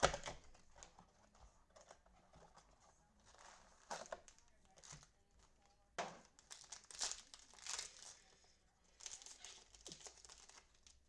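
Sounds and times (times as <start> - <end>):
wrapper crinkling: 6.2 - 11.0.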